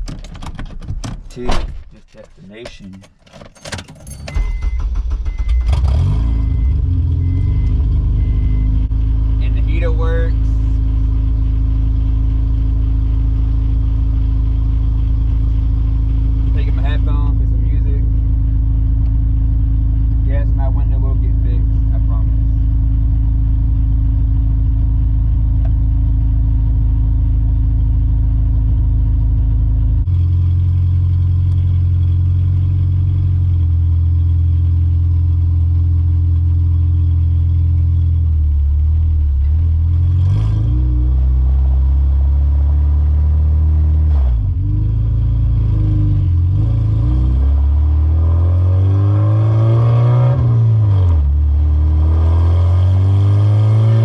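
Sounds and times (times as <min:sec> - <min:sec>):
car engine revving through gears: 0:04.4 - 0:08.9, 0:39.5 - 0:54.0.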